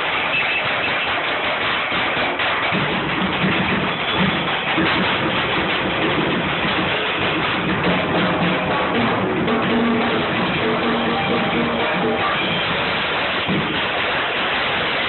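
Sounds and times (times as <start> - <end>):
loud guitar music: 8.4 - 14.0.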